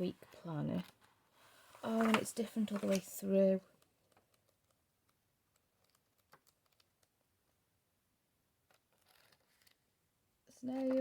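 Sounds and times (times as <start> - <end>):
paper pages leafed through: 0.7 - 7.2, 8.7 - 9.8.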